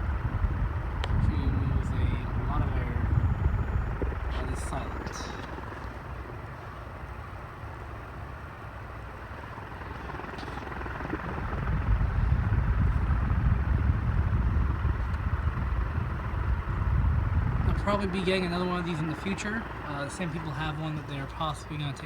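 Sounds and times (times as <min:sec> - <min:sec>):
low rumble: 0:00.0 - 0:07.0, 0:09.4 - 0:19.1
ceiling fan whoosh: 0:09.5 - 0:19.1.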